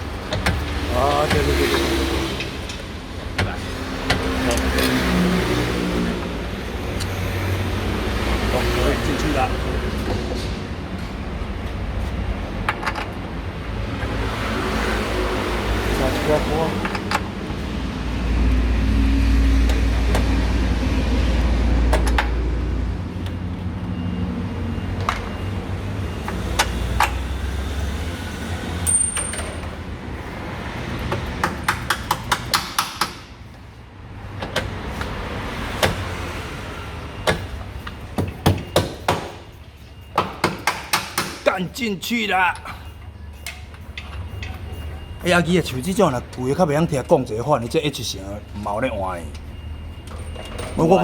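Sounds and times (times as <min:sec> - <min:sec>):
hammer striking metal: 0:31.4 - 0:33.4, 0:38.2 - 0:41.8.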